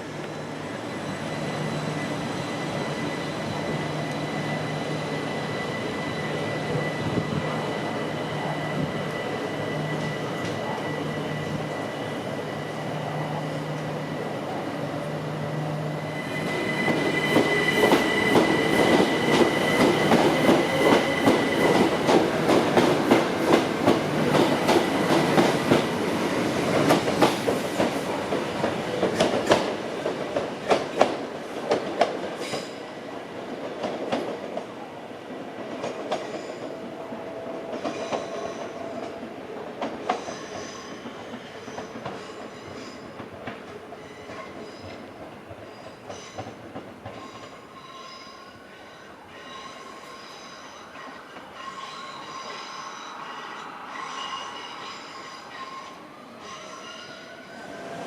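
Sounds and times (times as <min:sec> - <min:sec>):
high wheel squeal: 0:00.8 - 0:13.3, 0:15.6 - 0:21.8, 0:49.4 - 0:57.8.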